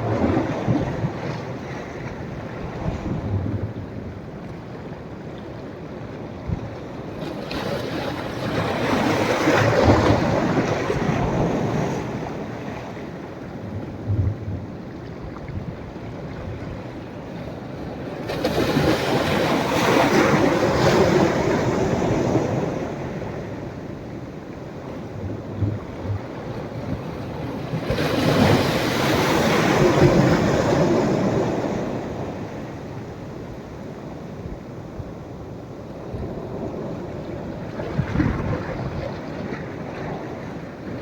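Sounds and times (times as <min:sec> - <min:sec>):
surf washing: 0:00.0 - 0:41.0
waves crashing on a beach: 0:16.8 - 0:41.0.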